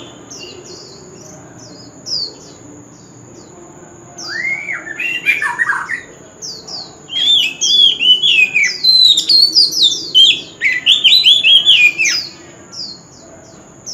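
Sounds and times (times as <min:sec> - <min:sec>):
bird singing whistles: 0:04.2 - 0:06.1, 0:07.1 - 0:12.4.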